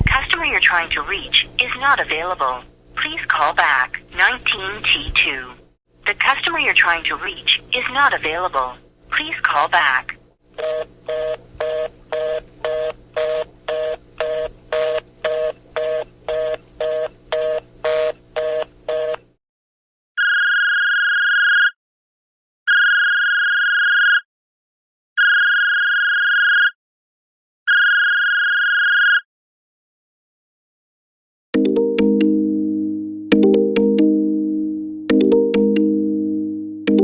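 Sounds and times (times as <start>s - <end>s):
telephone busy signal: 10.6s - 19.2s.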